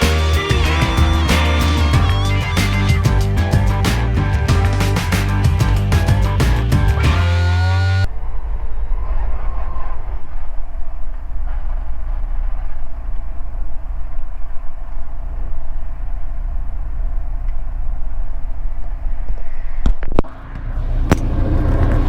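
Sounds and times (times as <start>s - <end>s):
aircraft engine running: 0.0s - 8.1s.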